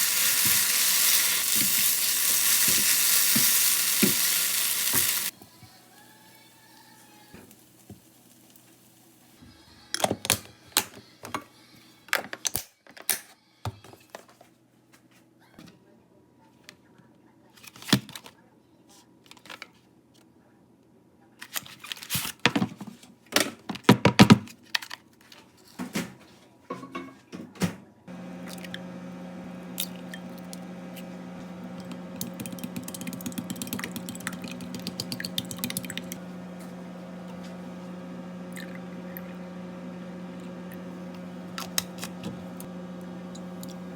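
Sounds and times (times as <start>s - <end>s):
clatter of dishes and packaging: 13.7s - 15.8s, 21.4s - 27.5s
machine hum: 28.1s - 43.9s.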